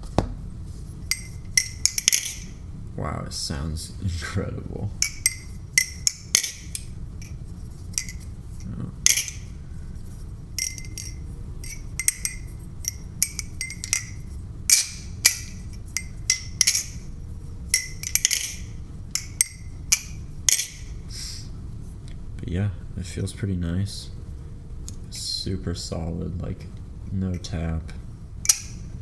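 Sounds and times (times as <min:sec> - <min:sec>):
balisong handles clacking: 0:01.1 - 0:02.6, 0:05.0 - 0:09.6, 0:10.6 - 0:21.0, 0:28.4 - 0:29.0.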